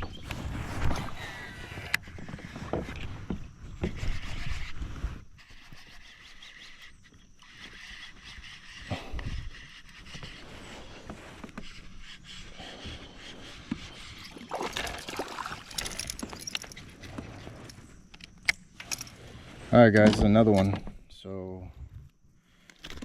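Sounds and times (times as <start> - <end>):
knocks and scrapes on kayak: 0.0 - 18.1, 18.8 - 21.0
small water splashes: 14.3 - 16.1.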